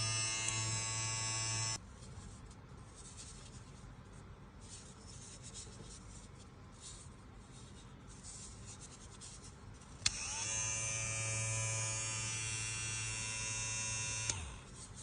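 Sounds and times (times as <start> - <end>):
hair clipper buzzing: 0.0 - 1.8, 10.1 - 14.6.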